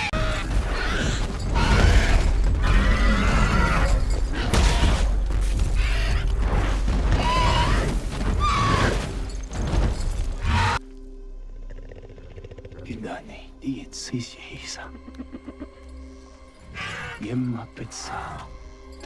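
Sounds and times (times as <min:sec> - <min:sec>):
giant bird creature crying: 0:00.0 - 0:09.1, 0:10.4 - 0:10.8
film score music: 0:00.0 - 0:19.0.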